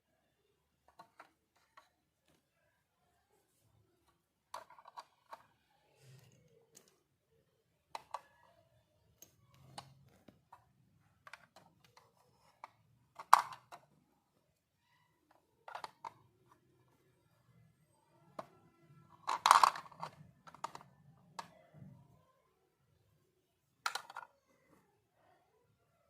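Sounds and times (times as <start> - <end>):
toy pieces clicking and tapping: 11.3 - 13.9, 15.6 - 16.2, 19.1 - 21.5, 23.8 - 24.3.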